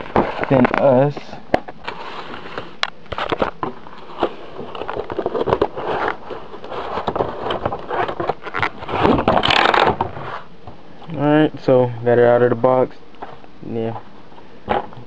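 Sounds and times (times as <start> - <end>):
cardboard box being pulled open: 4.0 - 10.5.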